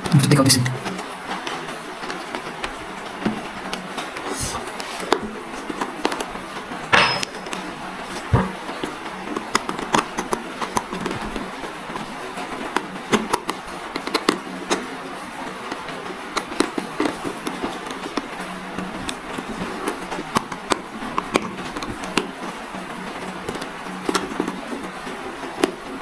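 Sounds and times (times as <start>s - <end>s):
helmet scrape: 4.2s - 5.4s.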